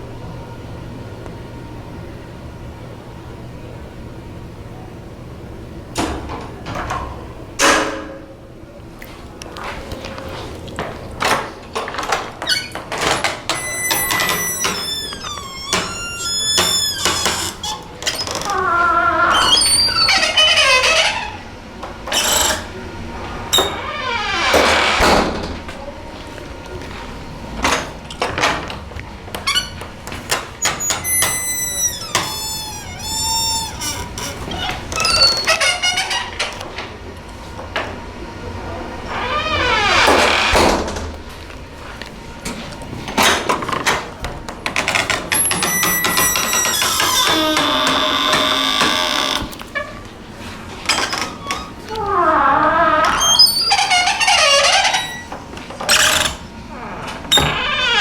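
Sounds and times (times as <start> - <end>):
heavy door creaking: 11.2 - 25.7, 29.3 - 36.6, 39.0 - 41.2, 43.2 - 58.0
door squealing: 12.4 - 21.5, 22.1 - 22.7, 23.5 - 25.4, 29.4 - 36.5, 39.1 - 40.9, 44.9 - 50.0, 50.9 - 58.0.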